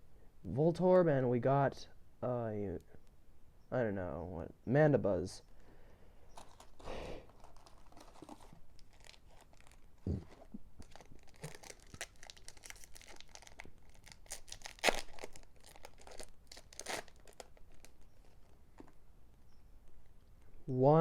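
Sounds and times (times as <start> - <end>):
foil wrapper tearing and crinkling: 6.4 - 18.9.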